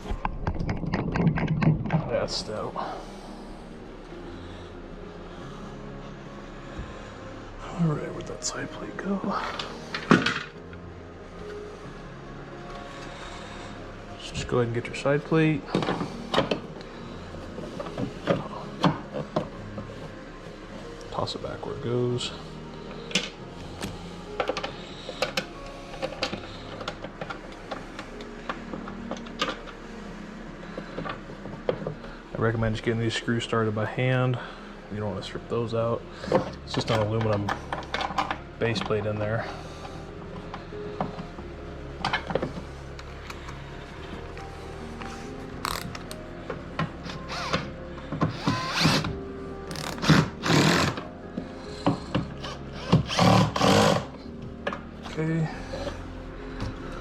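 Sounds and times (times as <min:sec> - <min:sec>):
cordless drill driving screws: 0:47.0 - 0:51.0, 0:51.9 - 0:54.1.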